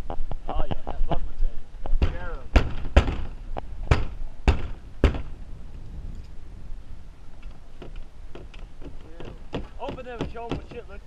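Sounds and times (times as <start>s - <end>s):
dull thuds: 1.9s - 5.4s, 7.5s - 11.0s.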